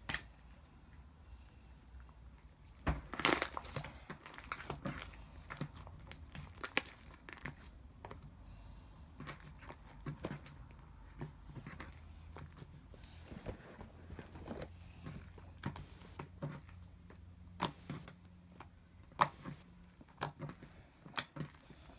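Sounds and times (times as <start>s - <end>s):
slime crackling and popping: 3.0s - 8.2s, 17.5s - 21.7s.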